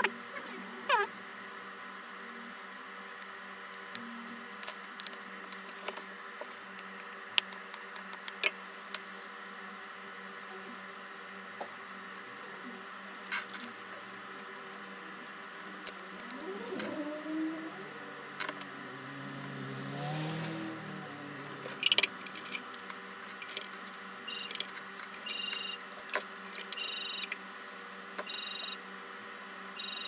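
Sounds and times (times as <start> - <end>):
steady electrical hum: 0.0 - 30.0
short rising sound: 16.3 - 22.0.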